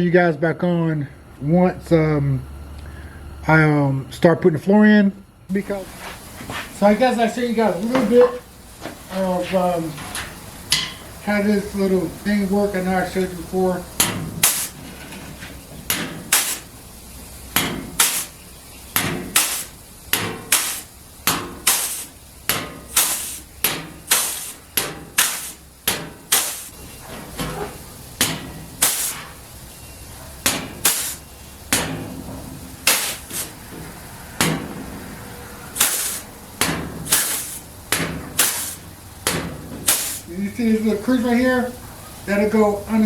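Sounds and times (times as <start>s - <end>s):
flange tool metallic clack: 10.0s - 11.1s, 14.0s - 16.7s.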